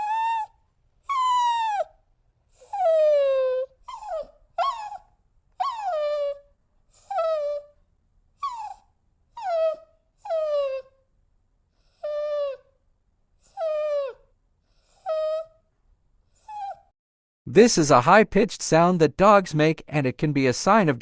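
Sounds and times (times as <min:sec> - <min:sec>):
dog whining: 0:00.0 - 0:11.1, 0:11.7 - 0:15.7, 0:16.3 - 0:16.9.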